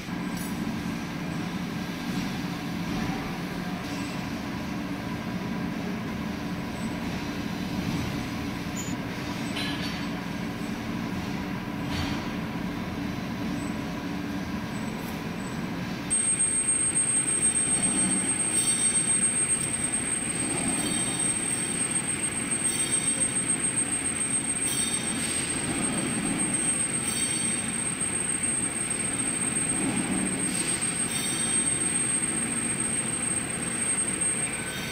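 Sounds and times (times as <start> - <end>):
metal lathe running: 16.1 - 34.9.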